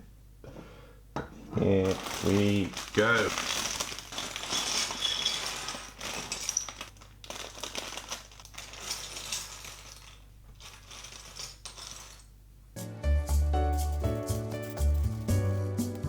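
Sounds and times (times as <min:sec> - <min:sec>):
plastic bricks clicking and rattling: 0:01.8 - 0:12.3.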